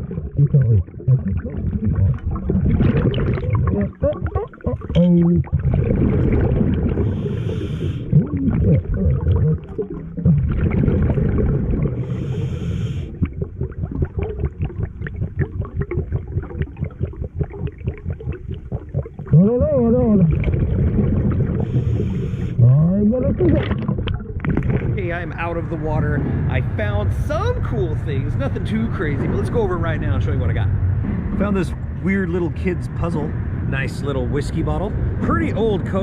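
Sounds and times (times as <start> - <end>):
bubbling exhales: 0.0 - 25.4
crackle of bubbles: 0.0 - 25.8
regulator hissing inhales: 7.1 - 8.1, 12.0 - 13.1, 21.6 - 22.6.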